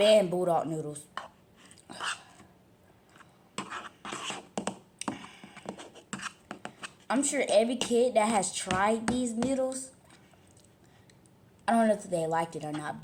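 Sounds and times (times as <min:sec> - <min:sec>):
scraping and scratching: 0:03.1 - 0:04.8, 0:05.4 - 0:07.1.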